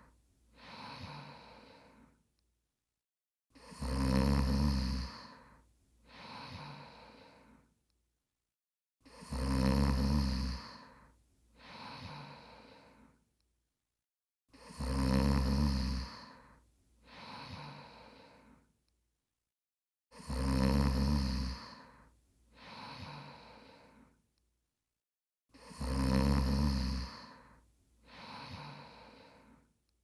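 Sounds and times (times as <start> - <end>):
person snoring: 0.0 - 2.2, 3.6 - 7.7, 9.0 - 13.2, 14.5 - 18.7, 20.1 - 24.2, 25.5 - 29.7.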